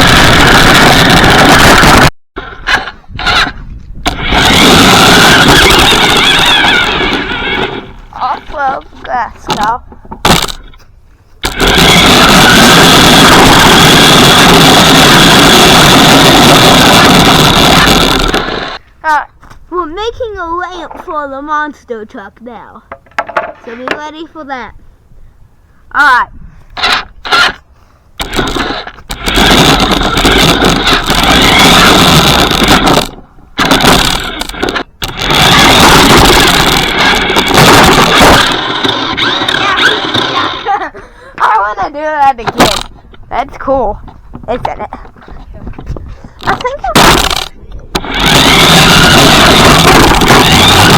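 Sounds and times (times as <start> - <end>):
toy truck motor and wheels rushing: 0.0 - 8.0, 11.5 - 18.8, 26.8 - 27.6, 28.2 - 40.9, 46.5 - 50.9
steady high whine: 0.0 - 9.7, 10.3 - 18.9, 26.8 - 42.0, 46.5 - 50.9
tyres and chassis rattling: 0.0 - 10.8, 28.2 - 50.9
toy truck motor whine: 33.6 - 40.7.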